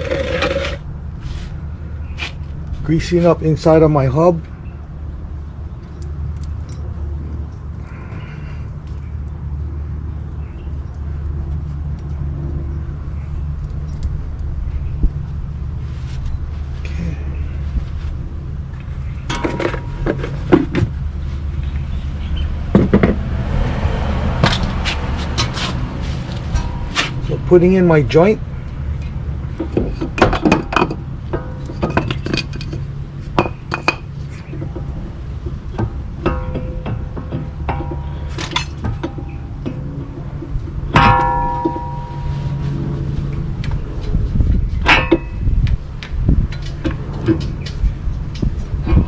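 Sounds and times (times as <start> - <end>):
low machine drone: 0.0 - 49.0
metal parts clinking: 37.7 - 39.8.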